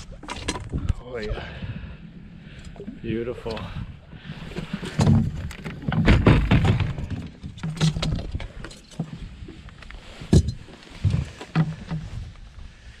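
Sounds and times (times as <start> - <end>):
knocks and thumps on boat: 4.3 - 12.4.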